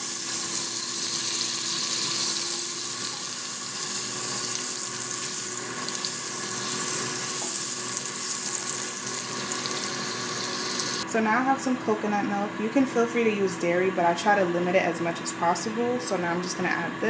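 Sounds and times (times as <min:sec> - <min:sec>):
butter sizzling in a frying pan: 0:00.0 - 0:11.0.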